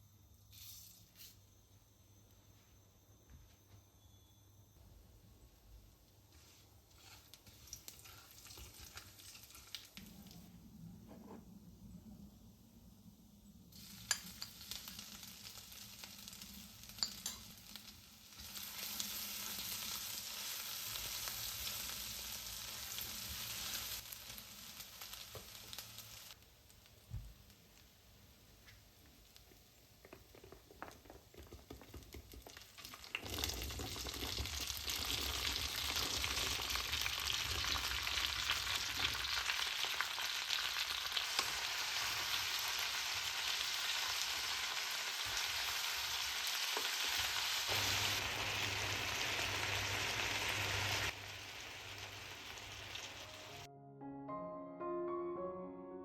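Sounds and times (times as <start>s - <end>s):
food sizzling in hot oil: 7.0s - 10.2s, 13.7s - 26.9s, 31.9s - 53.7s
soft piano music: 53.2s - 56.0s.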